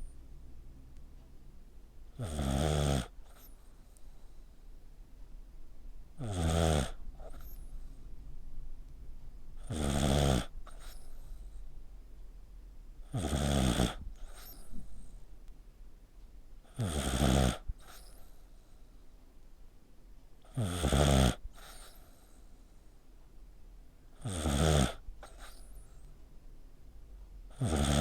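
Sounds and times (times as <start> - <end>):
pet snoring: 2.1 - 4.4, 6.2 - 7.8, 9.6 - 11.6, 13.0 - 15.2, 16.7 - 18.4, 20.5 - 22.3, 24.2 - 26.0, 27.5 - 28.0.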